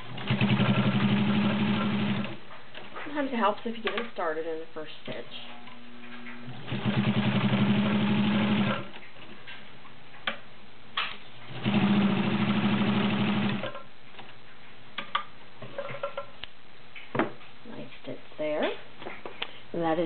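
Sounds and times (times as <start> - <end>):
sewing machine stitching: 0.0 - 2.4, 6.4 - 9.0, 11.5 - 13.9.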